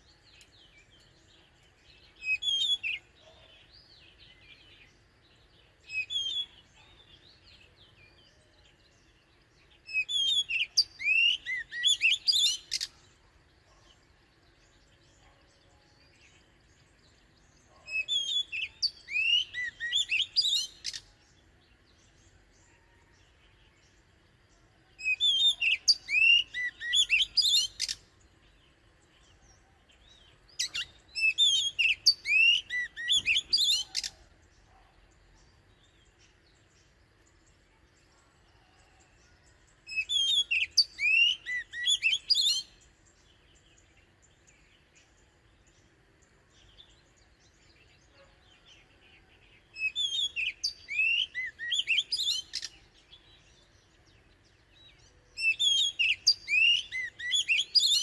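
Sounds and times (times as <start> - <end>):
bird singing whistled phrases: 2.1 - 3.1, 5.8 - 7.1, 9.8 - 13.0, 17.7 - 21.1, 25.0 - 28.0, 30.5 - 34.3, 39.9 - 42.8, 49.7 - 53.3, 55.3 - 58.0.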